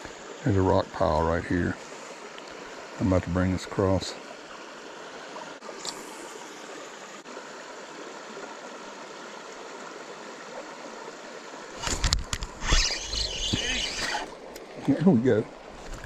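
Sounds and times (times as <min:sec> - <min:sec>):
creek water running: 0:00.0 - 0:16.0.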